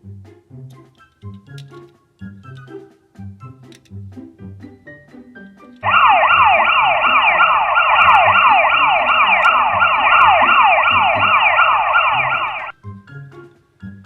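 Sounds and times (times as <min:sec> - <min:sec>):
yelp siren: 0:05.8 - 0:12.7.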